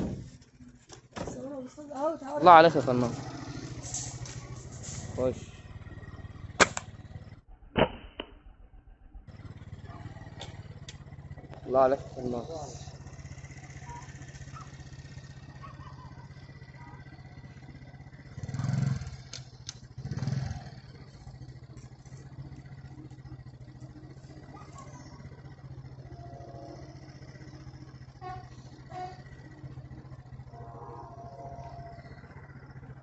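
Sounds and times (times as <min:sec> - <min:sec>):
dull thuds: 0:00.0 - 0:01.5
vehicle engine idling: 0:00.0 - 0:33.0.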